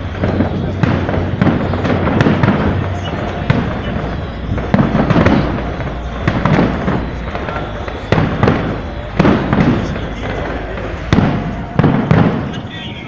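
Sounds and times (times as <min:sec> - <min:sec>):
fireworks crackling: 0:00.0 - 0:13.0
fireworks loud bangs: 0:00.0 - 0:13.0.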